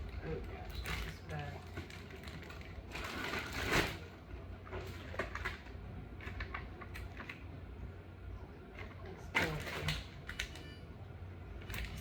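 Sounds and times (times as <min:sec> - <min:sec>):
plastic packaging rustling: 0:00.0 - 0:04.1.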